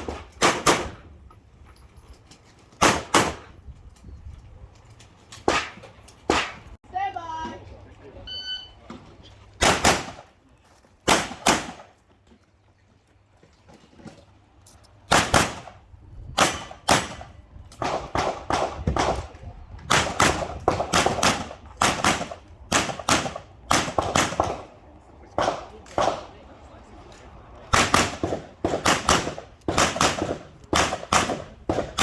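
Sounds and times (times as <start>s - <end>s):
pistol shots: 0.0s - 1.0s, 2.8s - 3.4s, 9.6s - 10.3s, 11.1s - 11.9s, 15.1s - 15.8s, 16.4s - 19.3s, 19.9s - 24.7s, 27.7s - 32.0s.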